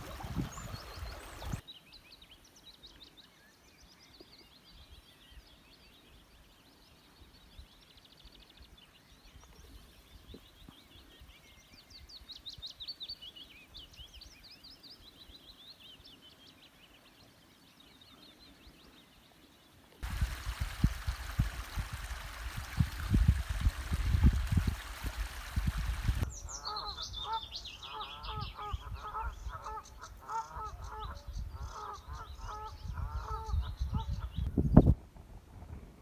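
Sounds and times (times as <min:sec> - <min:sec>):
birds calling: 0:00.0 - 0:01.6, 0:20.1 - 0:34.5
wind rumble on microphone: 0:00.0 - 0:01.6, 0:20.0 - 0:36.0
higher falling bird calls: 0:20.0 - 0:34.5.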